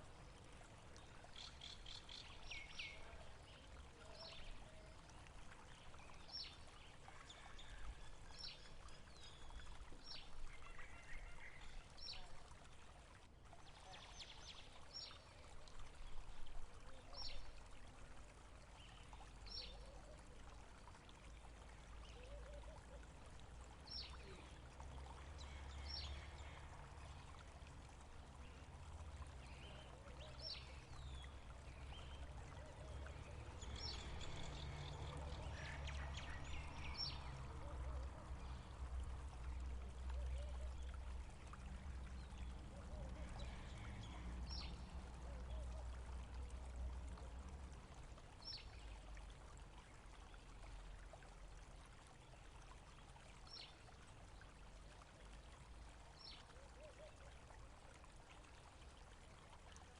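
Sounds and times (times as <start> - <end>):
water flowing: 0.0 - 59.9.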